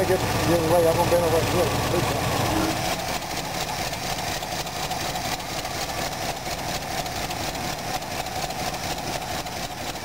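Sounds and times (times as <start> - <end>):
car engine idling: 0.0 - 10.0
engine fan turning: 0.0 - 10.0.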